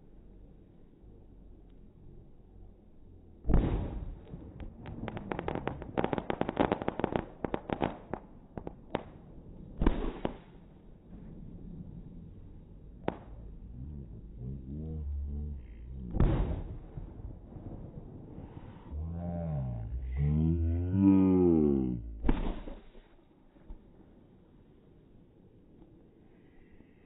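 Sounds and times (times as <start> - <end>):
fireworks loud bangs: 3.5 - 8.2, 9.8 - 10.5, 16.1 - 17.1, 22.2 - 22.8
fireworks crackling pops: 3.5 - 9.2, 9.8 - 10.7, 22.2 - 23.0.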